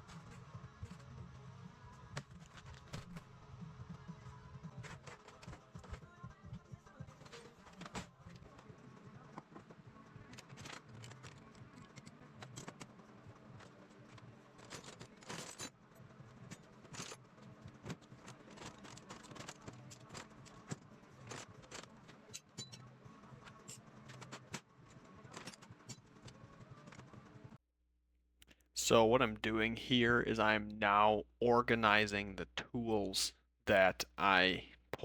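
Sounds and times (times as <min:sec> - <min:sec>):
faint background music: 0:00.0 - 0:27.6.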